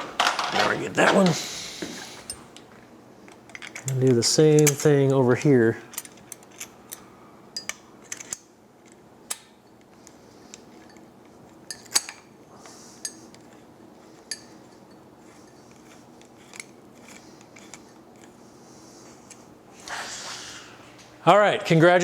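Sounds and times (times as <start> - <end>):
faint steady hum: 0.0 - 22.0
allen key clinking on bolts: 3.4 - 8.5, 10.7 - 12.2, 13.0 - 17.8.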